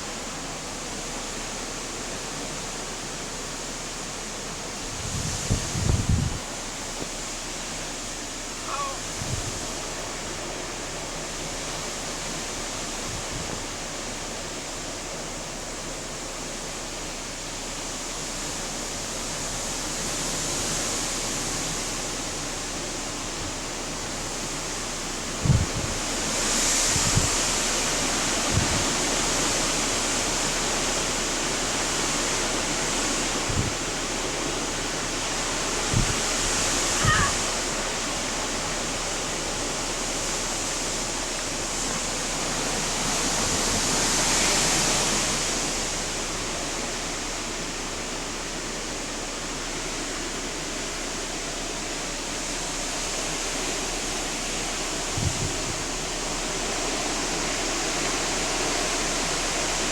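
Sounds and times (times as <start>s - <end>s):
rush of wind and rain: 0.0s - 59.9s
wind buffeting microphone: 4.8s - 6.6s, 9.0s - 10.0s, 25.3s - 29.1s, 33.3s - 34.1s, 35.8s - 37.7s, 55.0s - 56.4s.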